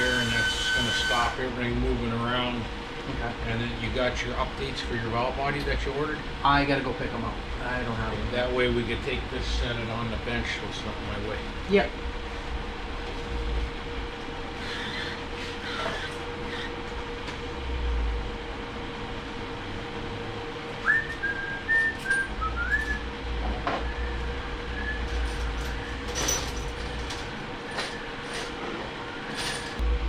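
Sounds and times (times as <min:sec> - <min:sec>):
steady hum: 0:00.0 - 0:30.0
person whistling: 0:20.8 - 0:23.0
low rumbles: 0:29.8 - 0:30.0.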